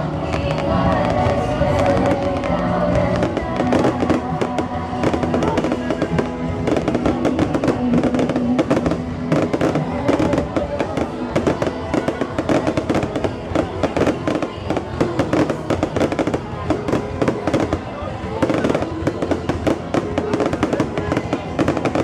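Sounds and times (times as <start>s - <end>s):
fireworks bangs and crackles: 0.0s - 22.0s
music playing: 0.0s - 22.0s.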